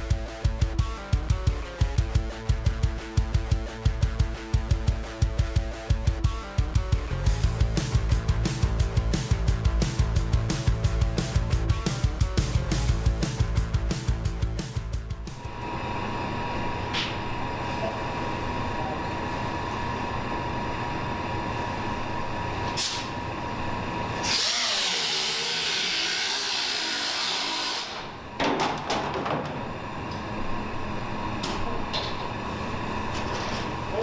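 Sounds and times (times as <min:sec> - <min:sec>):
power cutting tool whining: 0:24.1 - 0:28.1.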